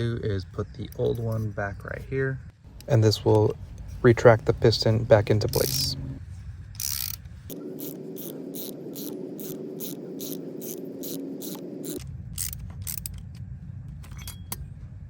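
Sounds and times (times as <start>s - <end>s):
ratcheting piston compressor clicking: 5.3s - 6.0s, 6.8s - 7.2s, 7.8s - 13.3s.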